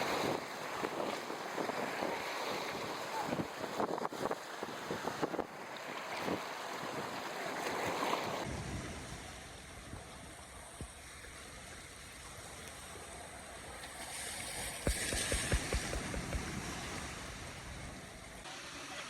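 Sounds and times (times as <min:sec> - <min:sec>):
water: 0:00.0 - 0:19.0
wind: 0:00.0 - 0:19.0
knocks: 0:14.8 - 0:16.5.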